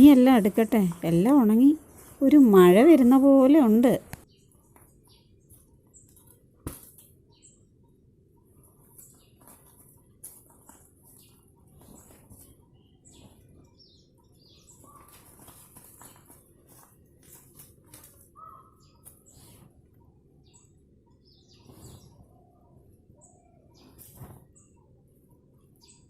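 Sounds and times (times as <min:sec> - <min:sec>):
birds chirping: 0:00.0 - 0:26.0.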